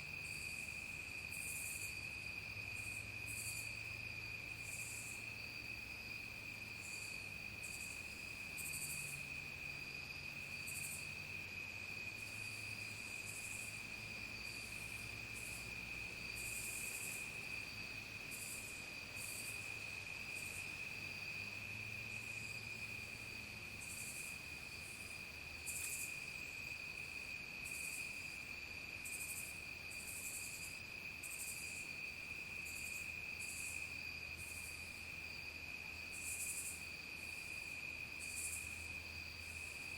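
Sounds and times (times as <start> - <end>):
crickets trilling: 0.0 - 39.9
buzzy insect calls: 6.8 - 9.2, 12.1 - 35.4, 36.1 - 39.9.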